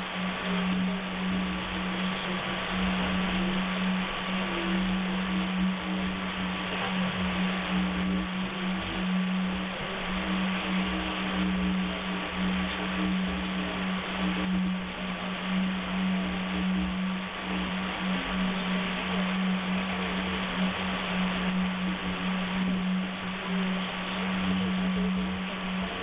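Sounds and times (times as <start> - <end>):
low radio buzz: 0.0 - 26.0
radio static hiss: 0.0 - 26.0.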